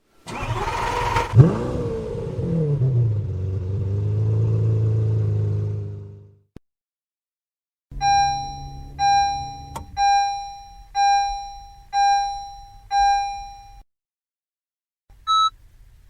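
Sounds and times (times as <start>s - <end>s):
car warning chime: 7.9s - 13.8s
low steady hum: 7.9s - 13.8s.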